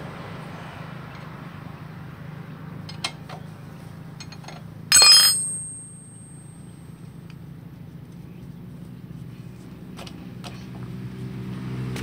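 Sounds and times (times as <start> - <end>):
ringing clank of metal on metal: 4.2 - 6.0.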